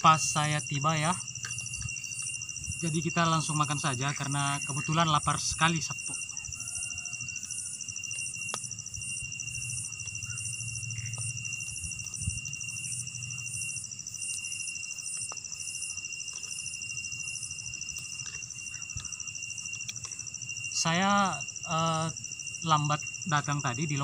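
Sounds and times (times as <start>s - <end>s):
high continuous insect trills: 0.0s - 24.0s
pulsing insect chirp: 0.0s - 24.0s
faint clicks: 19.0s - 20.2s.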